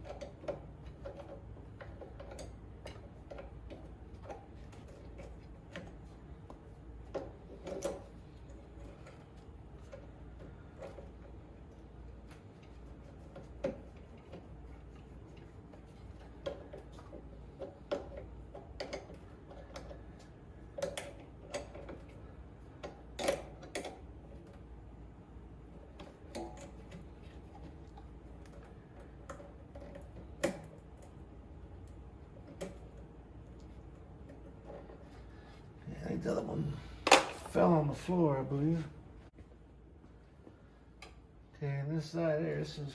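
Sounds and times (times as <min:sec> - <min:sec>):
low steady hum: 0:00.0 - 0:42.9
hand tools clicking and tapping: 0:12.3 - 0:24.6, 0:25.9 - 0:31.2.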